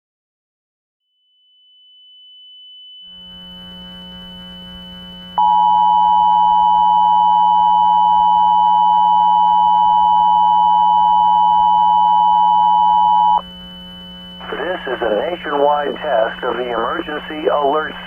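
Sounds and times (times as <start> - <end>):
faint steady high tone: 5.4 - 13.4.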